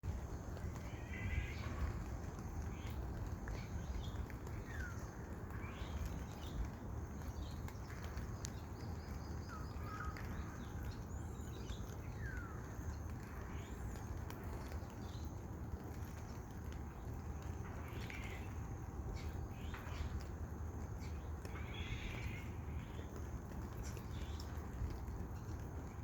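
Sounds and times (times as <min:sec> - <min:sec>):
steady rain: 0:00.0 - 0:26.0
birds calling: 0:17.0 - 0:25.7.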